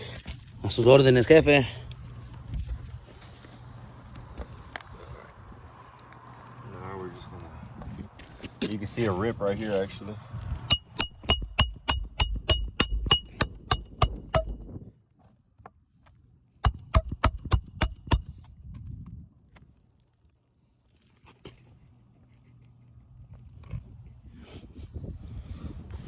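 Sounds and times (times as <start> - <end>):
hammer striking roofing nails: 10.7 - 14.9, 16.6 - 18.5.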